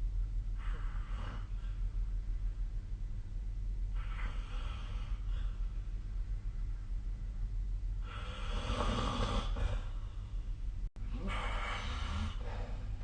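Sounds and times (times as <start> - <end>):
steady low hum: 0.0 - 13.0
person snoring: 8.1 - 9.9.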